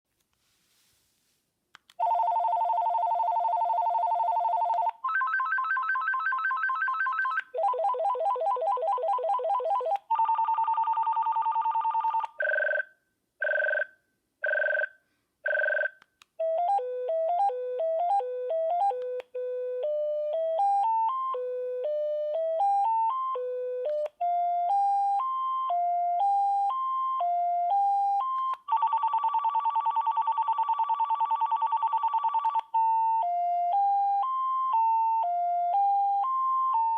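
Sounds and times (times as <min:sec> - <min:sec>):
cordless phone ringtone trills: 0:02.0 - 0:16.0.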